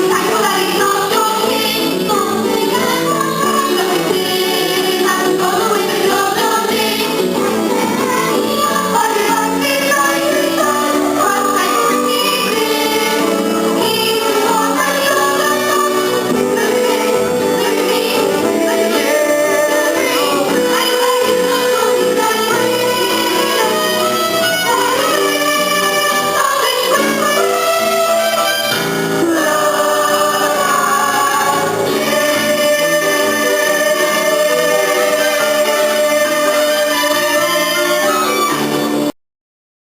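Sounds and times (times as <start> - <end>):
instrumental backing: 0.0 - 39.1.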